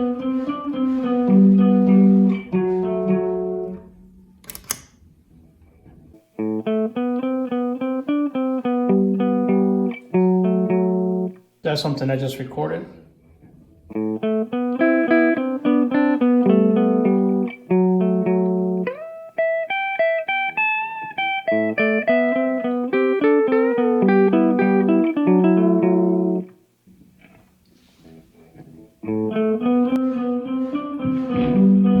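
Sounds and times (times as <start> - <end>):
electric guitar picked notes: 0.0 - 4.2, 6.4 - 11.4, 13.9 - 26.6, 28.5 - 32.0.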